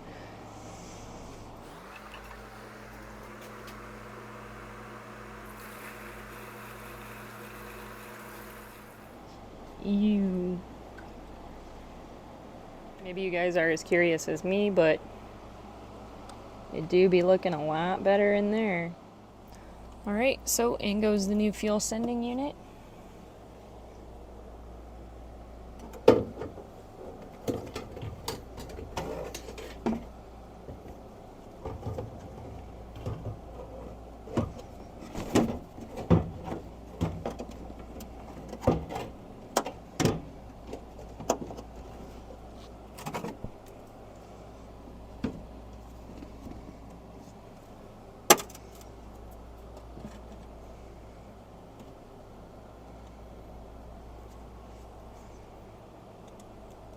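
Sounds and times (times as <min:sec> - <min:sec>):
steady low hum: 0:01.4 - 0:09.3.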